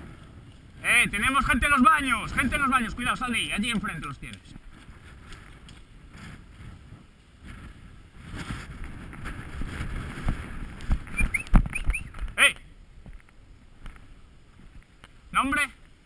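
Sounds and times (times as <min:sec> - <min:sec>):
handling and movement noise: 0:03.7 - 0:12.4.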